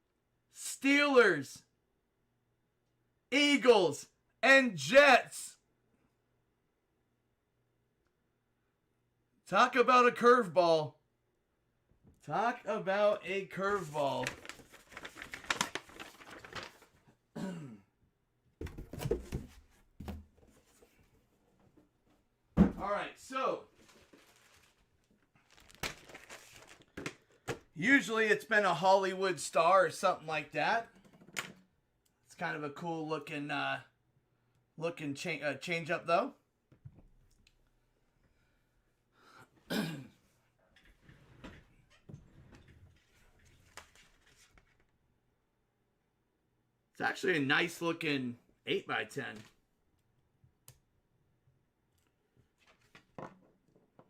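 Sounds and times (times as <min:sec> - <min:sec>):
cards and packaging rustling: 0:13.6 - 0:17.0, 0:23.8 - 0:27.7, 0:43.0 - 0:44.9
man clearing his throat: 0:17.3 - 0:17.9, 0:39.7 - 0:40.2.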